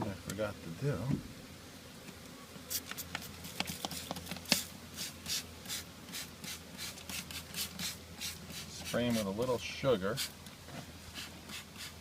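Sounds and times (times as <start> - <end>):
spray bottle hissing sprays: 2.7 - 9.3, 11.1 - 12.0.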